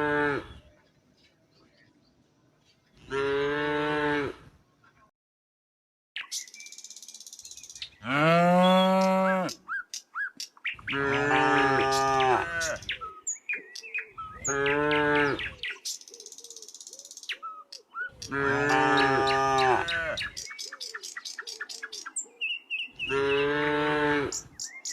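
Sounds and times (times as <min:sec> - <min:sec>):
small birds chirping: 0:00.4 - 0:03.1, 0:06.2 - 0:24.9
cattle mooing: 0:03.0 - 0:04.4, 0:08.0 - 0:09.6, 0:10.9 - 0:12.8, 0:18.3 - 0:20.3, 0:23.0 - 0:24.4.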